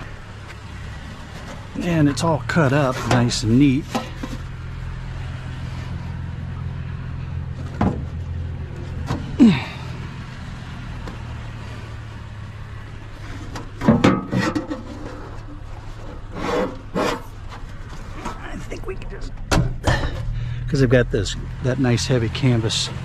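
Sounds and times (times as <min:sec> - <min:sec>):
vehicle engine idling: 0:00.0 - 0:23.0
metal panels clanking: 0:13.3 - 0:18.5.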